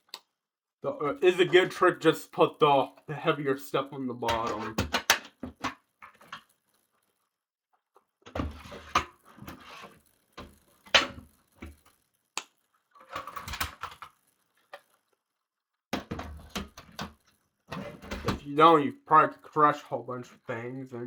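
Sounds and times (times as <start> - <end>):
objects knocking and clunking: 4.2 - 6.8, 8.0 - 12.0, 12.9 - 15.0, 15.9 - 18.5
rustling and scraping: 8.4 - 12.1.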